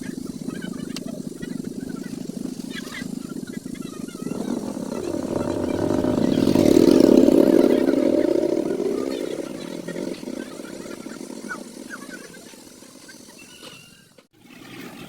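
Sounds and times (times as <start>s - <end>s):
vehicle engine passing: 1.6s - 12.9s.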